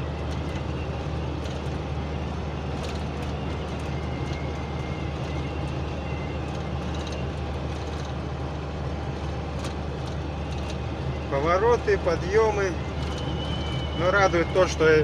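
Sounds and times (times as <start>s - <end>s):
car engine and road noise: 0.0s - 15.0s
faint high wind whistle: 10.2s - 15.0s.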